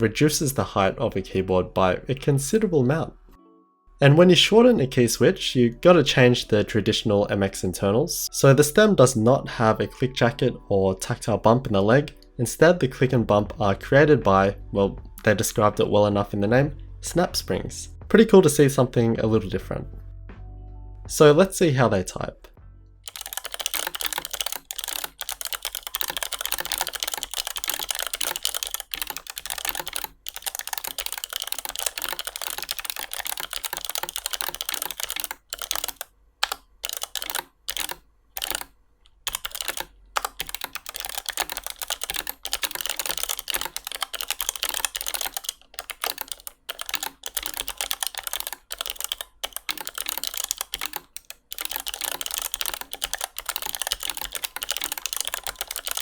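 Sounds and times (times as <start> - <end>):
clicky keyboard typing: 22.4 - 56.0.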